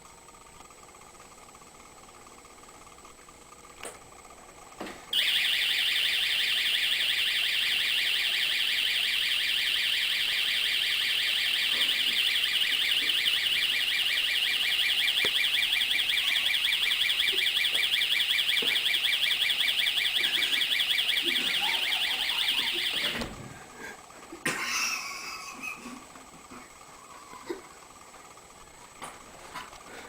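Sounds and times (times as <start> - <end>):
high-pitched warbling door alarm: 5.2 - 23.4.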